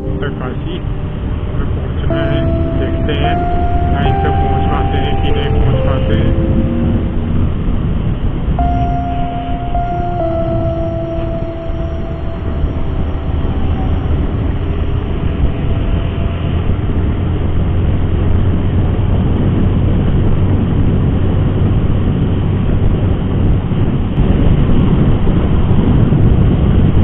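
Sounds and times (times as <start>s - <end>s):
road noise: 0.0s - 20.6s
wind on microphone: 0.0s - 27.0s.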